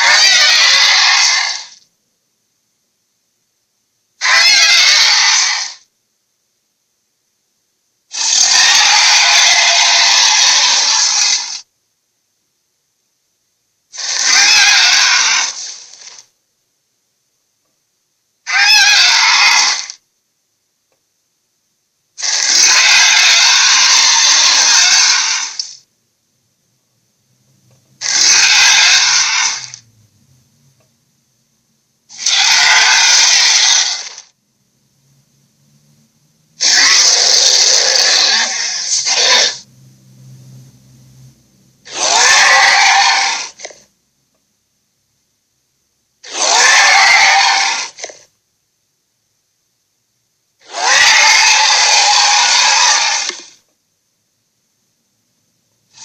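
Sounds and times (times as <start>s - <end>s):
dragon screeching calls: 0.0s - 1.8s, 4.2s - 5.9s, 8.1s - 11.7s, 13.9s - 16.2s, 18.4s - 20.0s, 22.2s - 25.8s, 28.0s - 29.8s, 32.1s - 34.3s, 36.6s - 39.7s, 41.8s - 43.8s, 46.2s - 48.3s, 50.6s - 53.6s.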